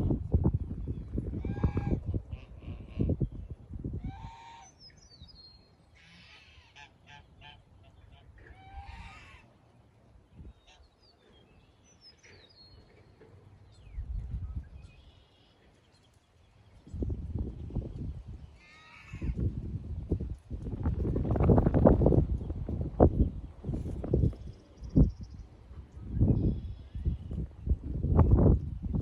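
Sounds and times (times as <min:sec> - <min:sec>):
geese honking: 0:04.0 - 0:04.8, 0:05.9 - 0:09.6
small birds chirping: 0:09.7 - 0:19.5, 0:21.1 - 0:29.0.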